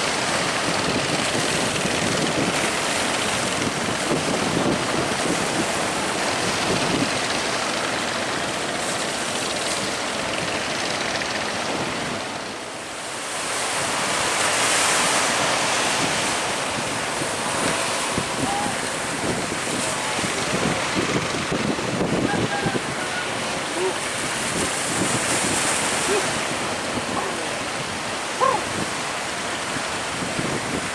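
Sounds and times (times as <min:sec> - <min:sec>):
sea waves rushing against ship: 0:00.0 - 0:30.9
wind buffeting microphone: 0:00.1 - 0:12.4, 0:13.7 - 0:30.9.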